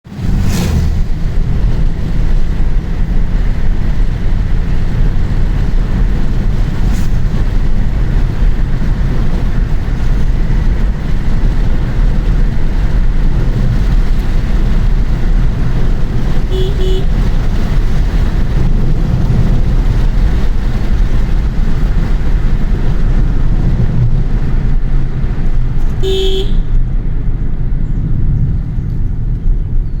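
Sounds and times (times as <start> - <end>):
vehicle rumble: 0.0 - 30.0
vehicle horn honking: 16.5 - 17.3, 25.9 - 26.8.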